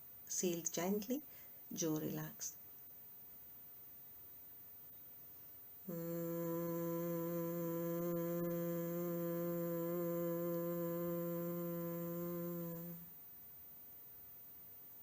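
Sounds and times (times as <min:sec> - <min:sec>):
person humming low note: 0:05.9 - 0:13.1.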